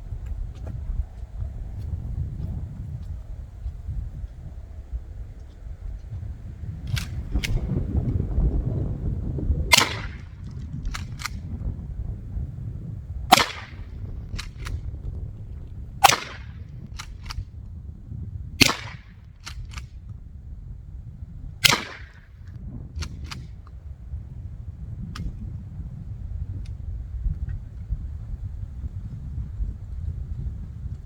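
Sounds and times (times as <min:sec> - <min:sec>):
shotgun shots: 0:09.7 - 0:10.4, 0:13.3 - 0:14.7, 0:16.0 - 0:16.7, 0:18.6 - 0:19.2, 0:21.6 - 0:22.2.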